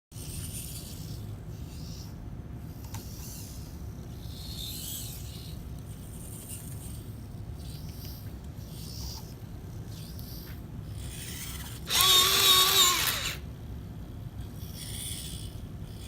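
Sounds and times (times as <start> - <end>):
steady low hum: 0.1 - 16.0
robot arm whirring and scraping: 2.8 - 13.5.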